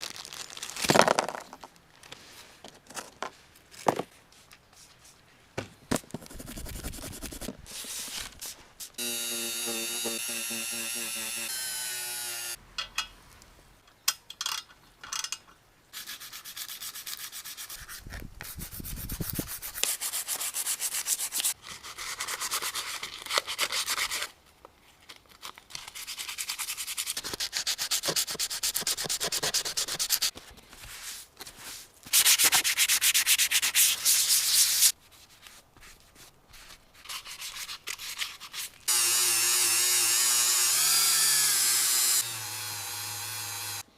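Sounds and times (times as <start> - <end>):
sanding rubbing strokes: 6.3 - 11.5, 16.0 - 23.0, 26.0 - 30.3, 30.9 - 38.8.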